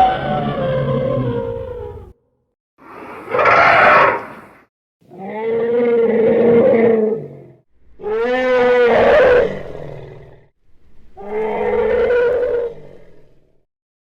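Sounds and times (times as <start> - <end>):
elephant roaring: 0.0 - 2.2, 3.0 - 4.4, 5.1 - 13.5.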